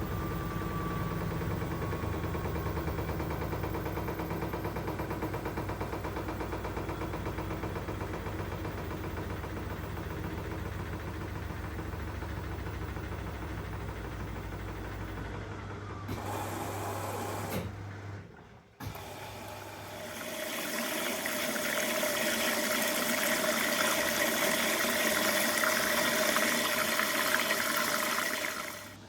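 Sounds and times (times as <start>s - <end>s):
washing machine electric hum: 0.0s - 29.0s
water rushing into drum: 20.0s - 29.0s.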